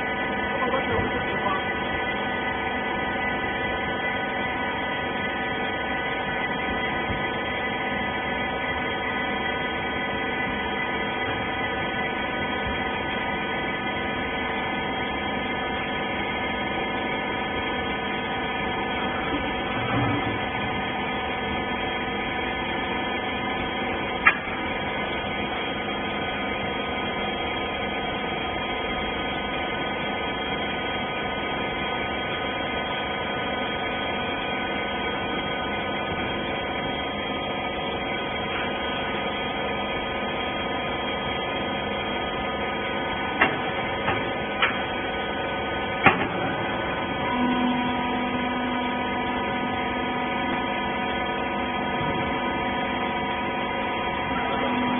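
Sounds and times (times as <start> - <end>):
sharp clicks and knocks: 43.4 - 44.8, 46.0 - 46.4.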